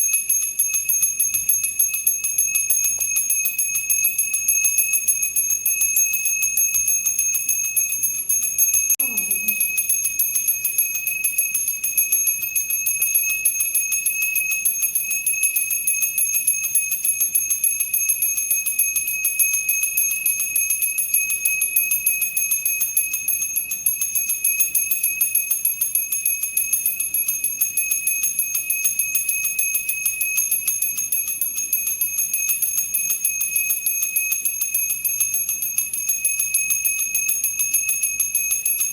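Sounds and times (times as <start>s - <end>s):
bell rung rapidly: 5.4s - 11.1s.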